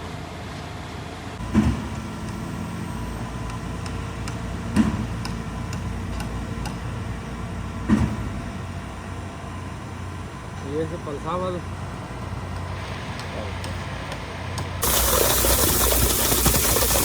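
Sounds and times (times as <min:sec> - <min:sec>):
engine running: 0:14.8 - 0:17.0.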